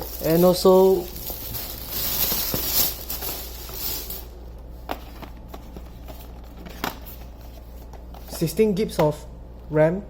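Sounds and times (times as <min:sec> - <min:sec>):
rustling handling noise: 0:00.0 - 0:08.7.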